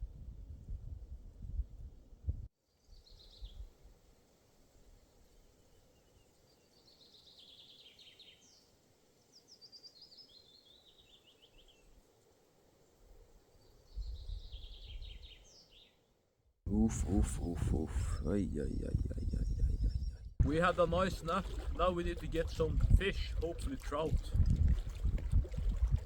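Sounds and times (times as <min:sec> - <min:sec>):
low wind rumble: 0:00.0 - 0:02.5, 0:16.7 - 0:26.0.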